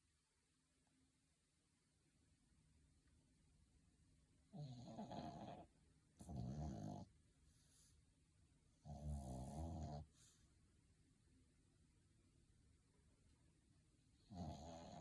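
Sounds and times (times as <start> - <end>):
dog snoring: 4.5 - 7.1, 8.8 - 10.4, 14.2 - 15.0.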